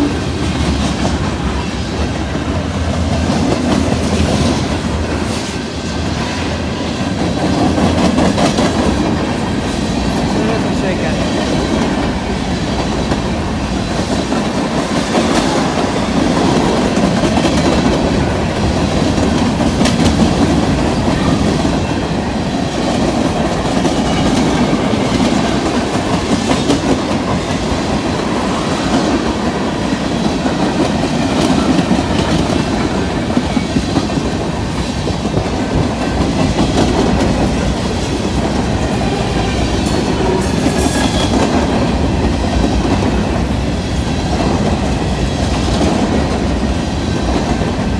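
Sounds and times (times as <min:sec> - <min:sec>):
train rumble: 0:00.0 - 0:47.9.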